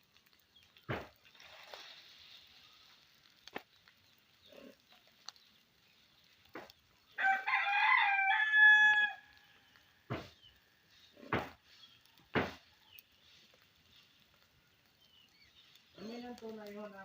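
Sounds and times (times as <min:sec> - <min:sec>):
faint clicks: 0:02.9 - 0:07.2
rooster crowing: 0:07.2 - 0:09.7.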